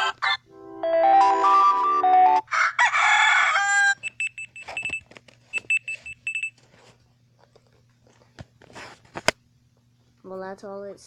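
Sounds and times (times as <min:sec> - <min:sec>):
musical ringtone: 0:00.5 - 0:02.4.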